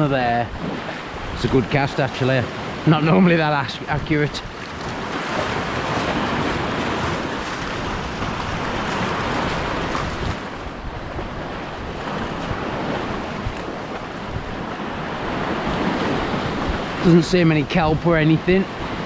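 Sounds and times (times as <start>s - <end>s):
wind buffeting microphone: 3.8s - 17.0s
sea surf washing in: 3.8s - 17.1s.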